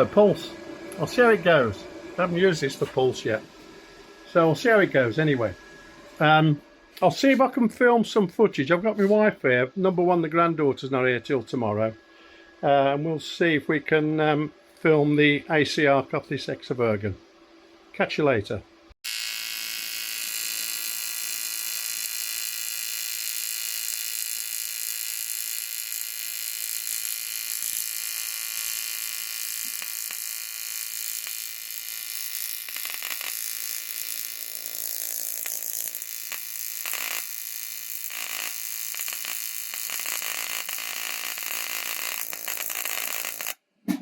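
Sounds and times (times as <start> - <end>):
tig welding arc buzzing: 0.0 - 5.6, 19.0 - 43.6.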